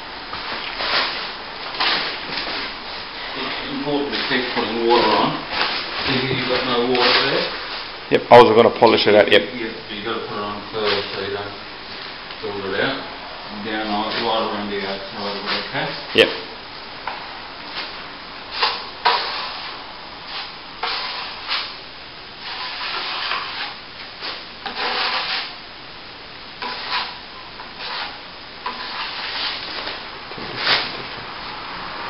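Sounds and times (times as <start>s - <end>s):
trowel scraping wet plaster: 18.6s - 21.8s, 22.4s - 25.6s, 26.6s - 30.0s.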